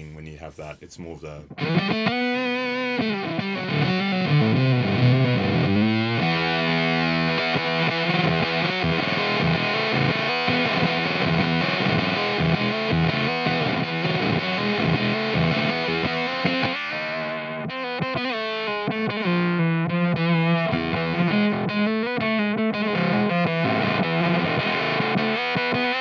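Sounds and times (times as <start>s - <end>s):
distorted electric guitar notes: 1.5s - 26.0s.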